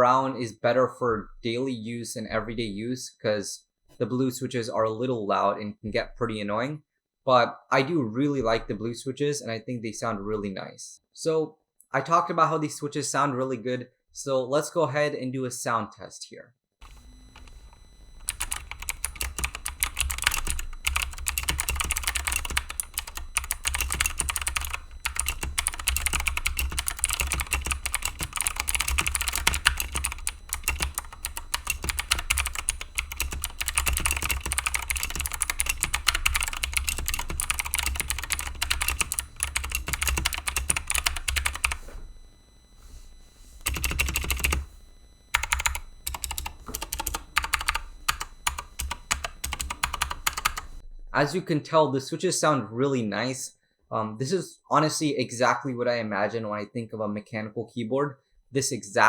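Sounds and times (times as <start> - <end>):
mechanical keyboard typing: 16.8 - 41.9, 43.6 - 44.7, 45.3 - 50.8.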